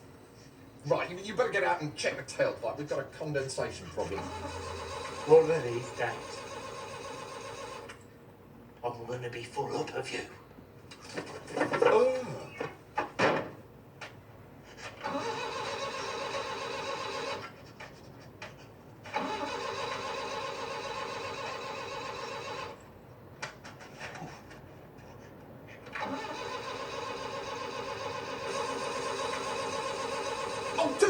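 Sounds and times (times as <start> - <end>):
van engine cranking: 4.0 - 7.9, 15.0 - 17.5, 19.0 - 22.8, 25.9 - 31.0.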